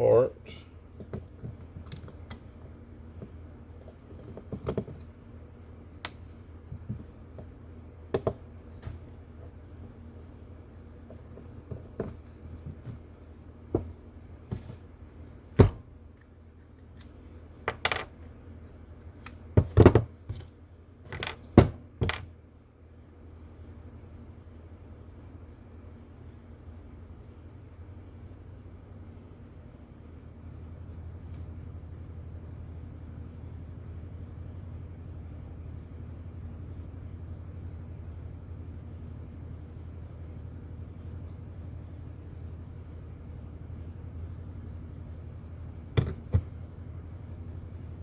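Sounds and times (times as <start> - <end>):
metal parts clattering on bench: 16.9 - 18.2.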